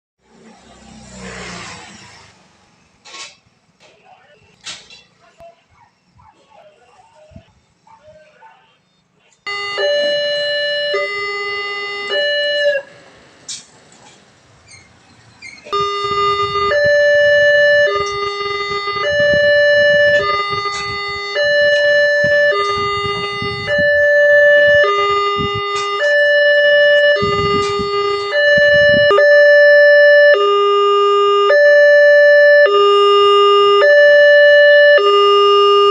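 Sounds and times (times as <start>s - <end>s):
level crossing two-tone alarm: 9.5s - 13.0s, 15.7s - 35.9s.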